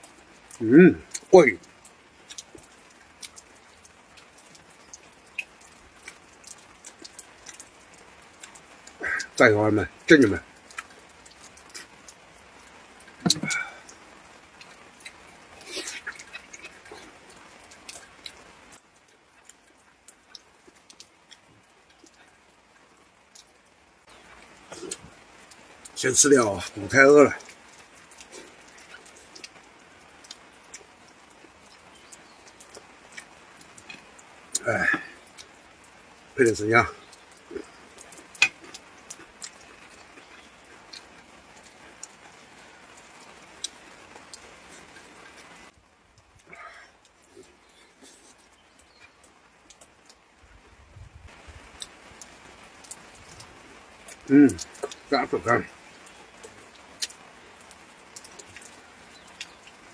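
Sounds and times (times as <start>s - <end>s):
rain pattering: 0.0s - 59.9s
wet mouth clicks and smacks: 13.1s - 14.0s, 56.4s - 59.8s
person chewing and gnawing: 37.1s - 42.4s.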